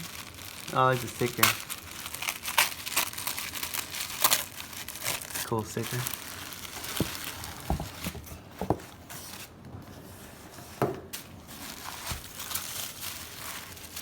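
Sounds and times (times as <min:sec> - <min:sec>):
cardboard packaging knocks and clicks: 0:06.7 - 0:09.3.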